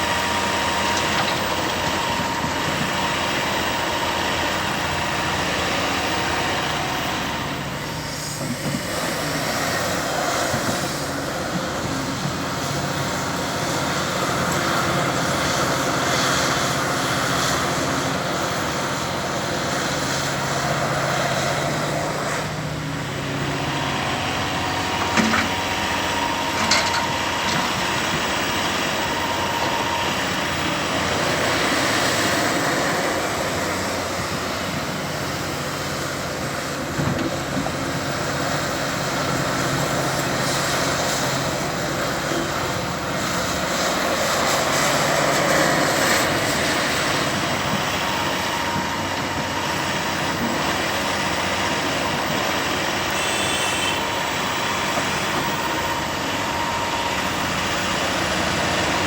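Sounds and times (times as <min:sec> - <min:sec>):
excavator diesel engine under load: 0:00.0 - 0:59.0
sharp metallic clanks: 0:26.6 - 0:27.8.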